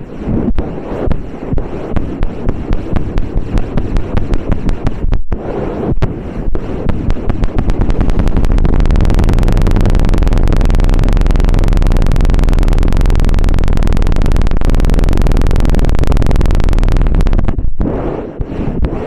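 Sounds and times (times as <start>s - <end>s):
stick rubbing ear microphone: 0.0s - 10.7s, 15.6s - 19.0s.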